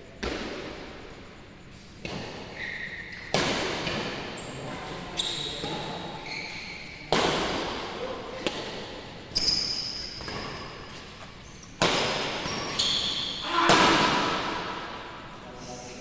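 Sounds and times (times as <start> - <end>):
racket hitting shuttlecock: 3.2 - 5.0, 11.8 - 15.2
short high squeaks: 6.2 - 6.8, 12.4 - 13.5.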